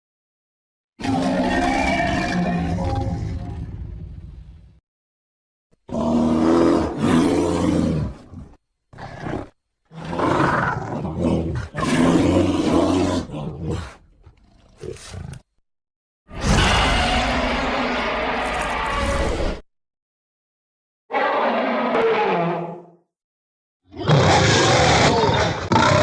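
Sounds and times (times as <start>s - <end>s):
creature growling roars: 5.9s - 8.3s, 9.0s - 14.0s, 23.9s - 26.0s.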